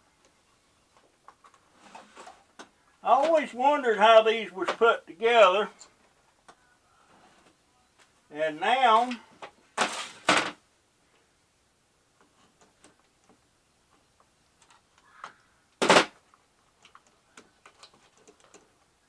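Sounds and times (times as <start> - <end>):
plastic parts clicking and rattling: 14.6 - 18.9.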